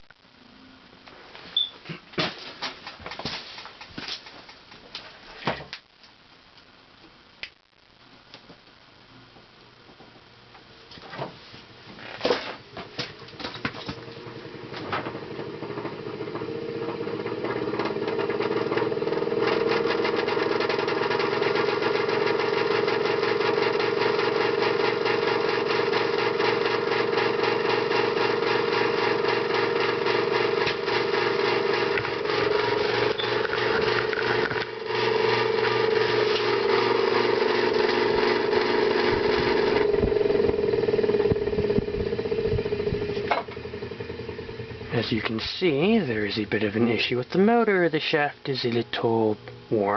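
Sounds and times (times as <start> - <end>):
ceiling fan motor hum: 12.6 - 49.9
rhythmic clunk of fan: 39.8 - 45.5.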